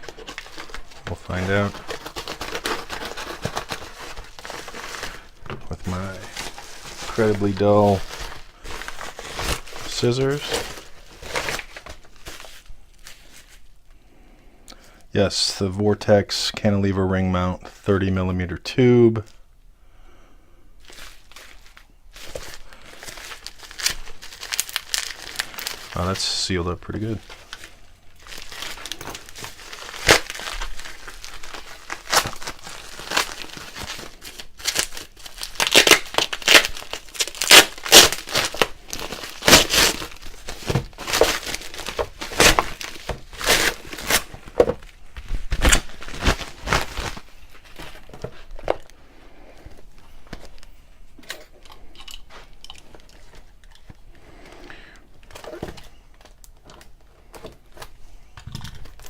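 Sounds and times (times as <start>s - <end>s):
packaging being torn and crinkled: 0.0s - 13.7s, 20.8s - 49.0s, 55.2s - 59.0s.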